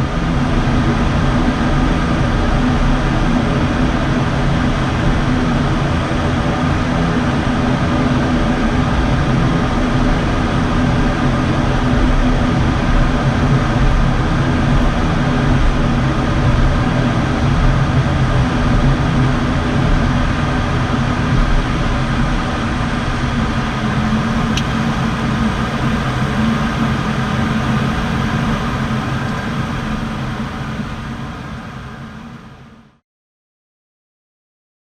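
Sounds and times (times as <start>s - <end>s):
turboprop engines droning: 0.0s - 33.0s
steady tones: 21.3s - 32.7s.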